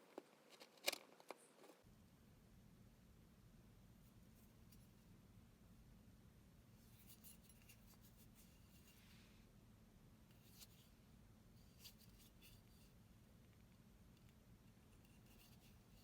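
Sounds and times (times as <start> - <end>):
faint clicks and scrapes: 0.0 - 1.8, 6.8 - 9.3, 11.6 - 16.0.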